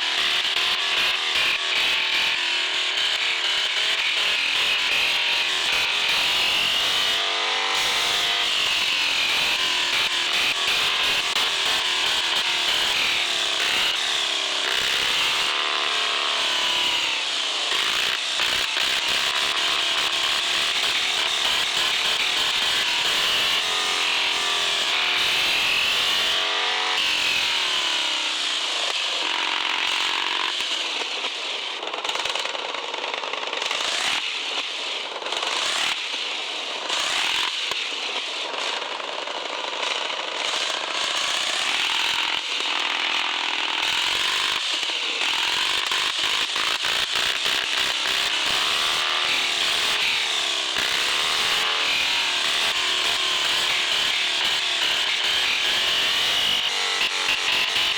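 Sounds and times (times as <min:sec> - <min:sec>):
gears grinding and clicking: 0:26.4 - 0:57.9.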